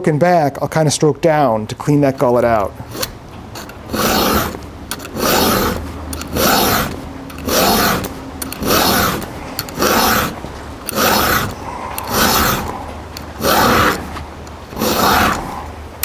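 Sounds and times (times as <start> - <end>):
file rasping on chainsaw chain: 2.0 - 16.0.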